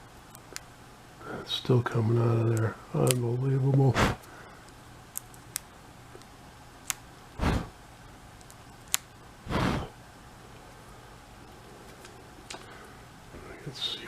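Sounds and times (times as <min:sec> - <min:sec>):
puffs of breath: 0:07.4 - 0:07.8, 0:09.5 - 0:10.0.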